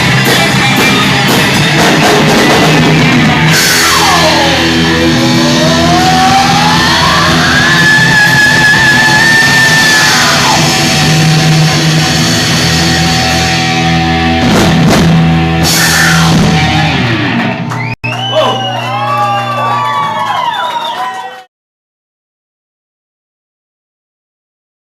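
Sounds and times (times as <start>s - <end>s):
drum hits: 0.0s - 4.8s, 10.6s - 17.5s
distorted electric guitar with vibrato: 0.0s - 17.8s
rock band playing live: 0.0s - 19.0s
crowd whooping and cheering: 3.5s - 11.2s, 15.7s - 21.5s.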